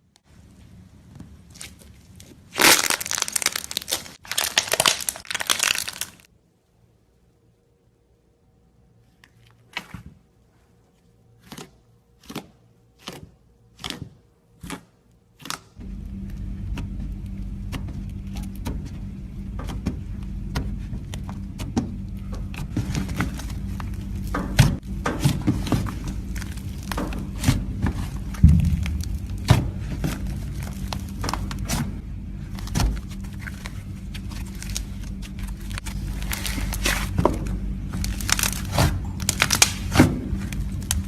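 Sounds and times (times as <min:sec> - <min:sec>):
slime crackling: 0:01.5 - 0:06.3, 0:25.5 - 0:41.0
slime popping: 0:02.5 - 0:06.2, 0:38.0 - 0:41.0
low hum: 0:15.8 - 0:41.0.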